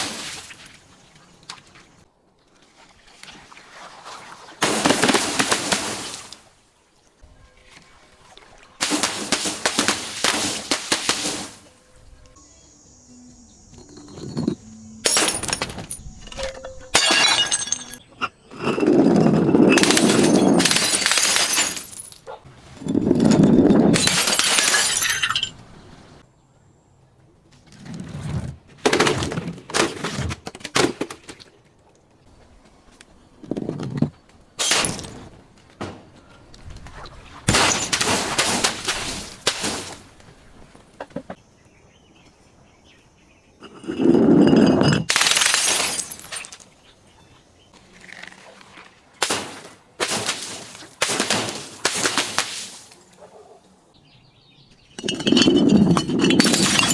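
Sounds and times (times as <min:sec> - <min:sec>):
glass knocks and clinks: 0:13.9 - 0:18.8, 0:43.6 - 0:45.1, 0:54.9 - 0:56.9
glass bottles smashing: 0:14.2 - 0:22.2, 0:22.9 - 0:25.6, 0:34.6 - 0:35.3, 0:37.5 - 0:40.0, 0:43.6 - 0:46.6, 0:55.0 - 0:56.9.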